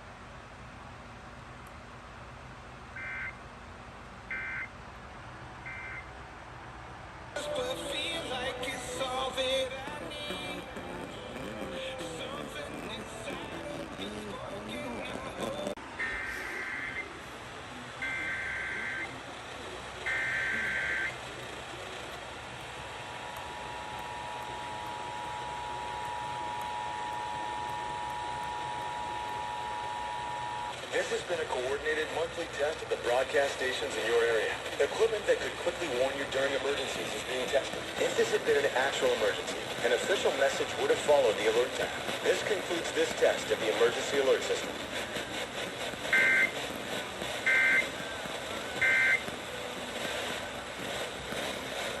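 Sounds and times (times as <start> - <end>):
radio reception hiss: 7.4 - 52.0
steady two-tone beep: 46.1 - 46.6, 47.5 - 47.9, 48.8 - 49.2.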